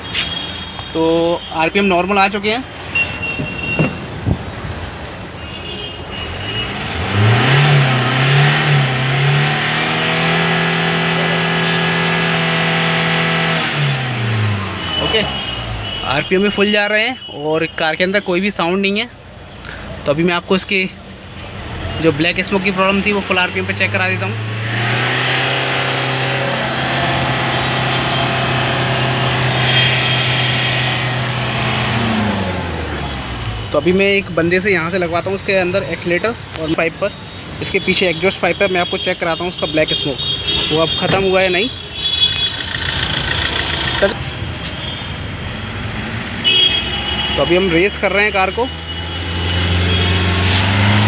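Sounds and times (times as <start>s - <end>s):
diesel engine revving: 6.6s - 16.1s, 21.5s - 34.8s, 42.3s - 44.3s, 45.2s - 51.0s.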